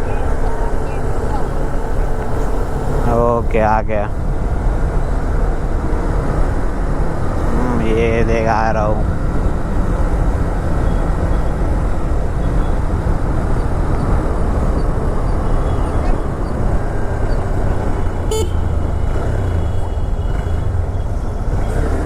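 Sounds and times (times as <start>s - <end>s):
motorcycle engine and wind rumble: 0.0s - 22.0s
vehicle horn toot: 18.2s - 18.8s.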